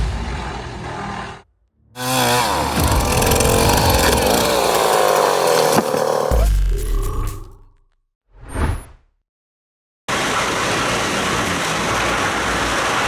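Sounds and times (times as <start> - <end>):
wood chipper shredding wood: 2.0 - 6.4, 10.1 - 13.0.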